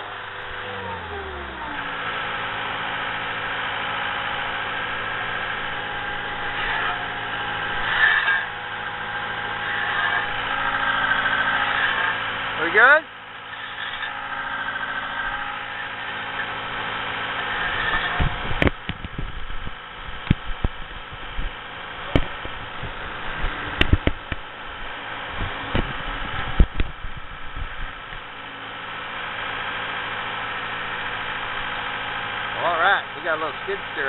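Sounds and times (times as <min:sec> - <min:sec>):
machine engine idling: 0:00.0 - 0:34.0
sharp knocks and clunks: 0:22.1 - 0:24.5.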